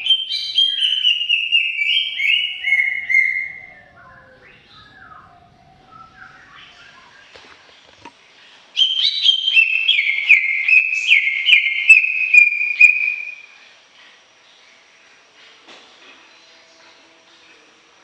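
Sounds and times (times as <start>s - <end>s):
bird whistling rapid notes: 0.0s - 7.3s, 8.8s - 13.5s
faint bird chirps: 0.0s - 7.8s.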